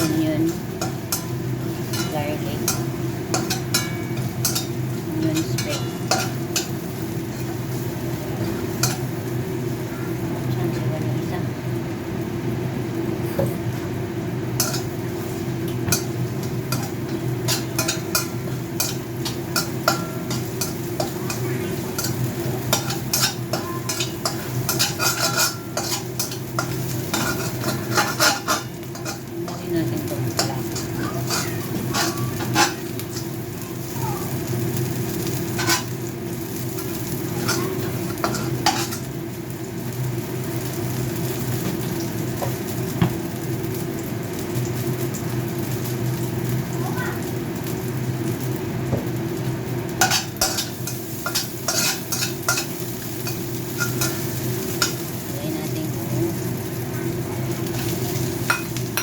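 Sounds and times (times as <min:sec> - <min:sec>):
metal utensil scraping a pan: 0:00.0 - 0:06.8, 0:15.9 - 0:33.4, 0:35.4 - 0:36.0, 0:36.8 - 0:39.1, 0:50.0 - 0:55.1
chicken frying in oil: 0:00.0 - 0:59.0.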